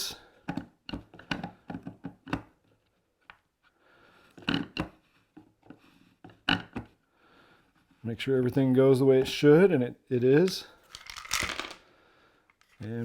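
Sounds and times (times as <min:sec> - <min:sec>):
plastic parts clicking: 0:10.4 - 0:11.8
plastic parts knocking: 0:10.4 - 0:11.8.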